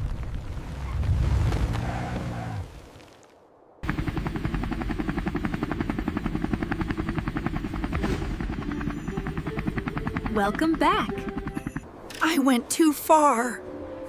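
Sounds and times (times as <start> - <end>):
helicopter rotor chopping: 3.8 - 12.4.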